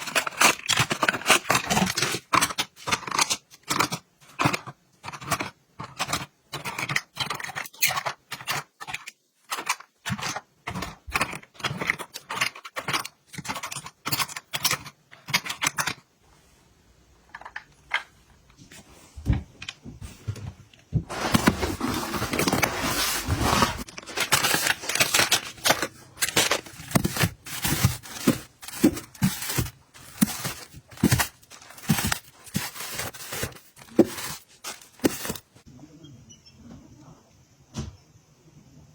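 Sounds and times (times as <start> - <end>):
continuous rustling: 21.0 - 35.7
packaging taps and clicks: 23.8 - 35.5.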